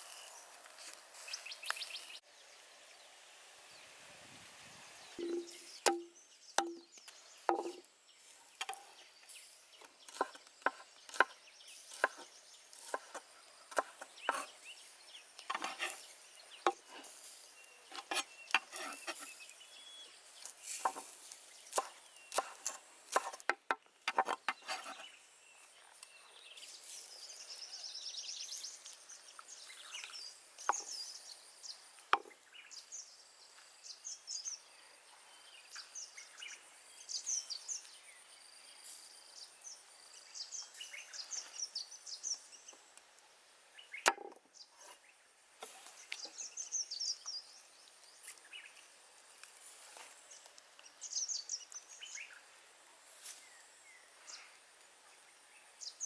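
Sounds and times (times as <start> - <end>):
knocks and chops on wood: 5.2 - 6.9, 7.5 - 7.8, 44.0 - 44.4.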